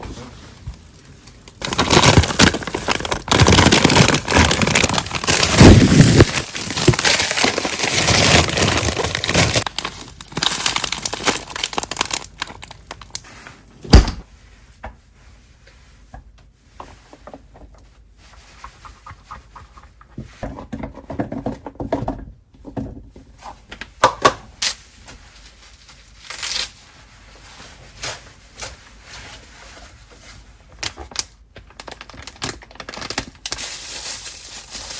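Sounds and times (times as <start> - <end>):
plastic packaging rustling and tearing: 0.0 - 13.7, 24.6 - 34.9.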